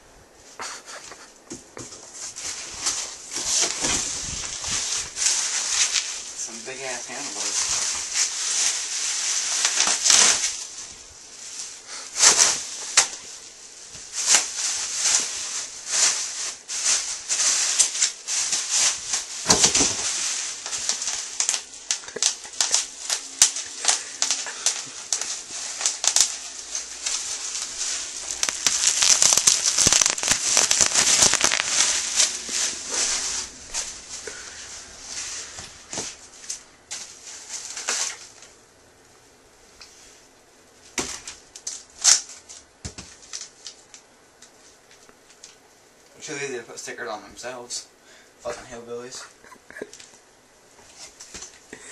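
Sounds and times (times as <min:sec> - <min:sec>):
packaging crinkling and crackling: 0:02.1 - 0:38.6, 0:40.9 - 0:45.6.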